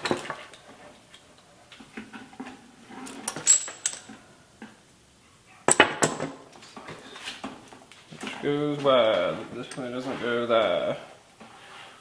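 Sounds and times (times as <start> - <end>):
small metal parts clinking: 3.1 - 4.2.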